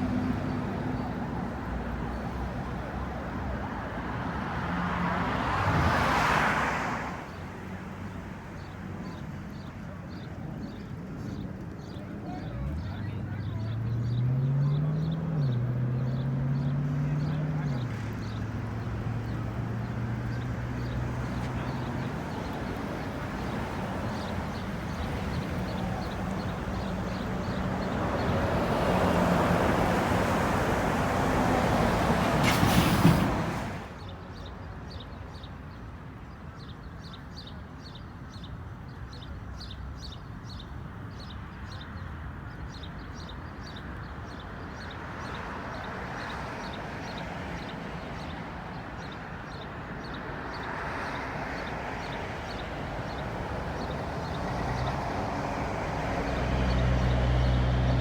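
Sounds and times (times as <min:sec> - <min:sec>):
vehicle engines running: 0:00.0 - 0:04.0, 0:10.5 - 0:34.0, 0:52.0 - 0:58.0.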